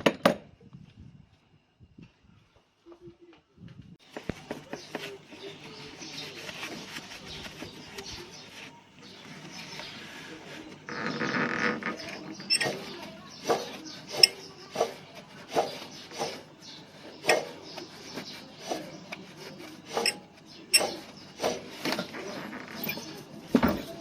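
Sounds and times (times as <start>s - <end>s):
hand tool scraping and clicking: 4.1s - 24.0s.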